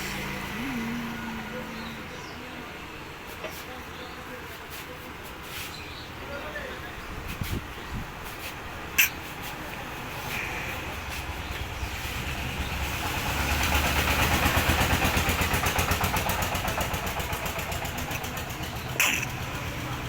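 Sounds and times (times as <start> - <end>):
vehicle engine passing by: 0.0 - 2.7, 9.9 - 20.0.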